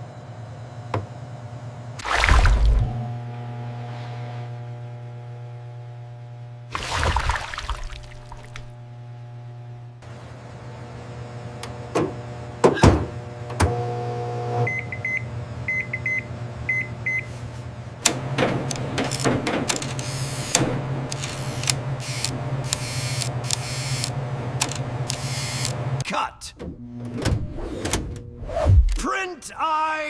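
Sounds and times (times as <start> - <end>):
microwave oven humming: 0.0 - 2.0, 2.8 - 6.7, 8.6 - 26.0.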